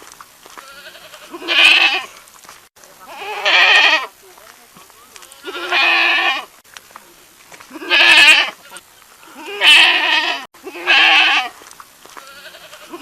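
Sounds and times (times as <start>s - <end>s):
goat bleating: 0.5s - 2.2s, 3.0s - 4.2s, 5.2s - 6.5s, 7.7s - 13.0s.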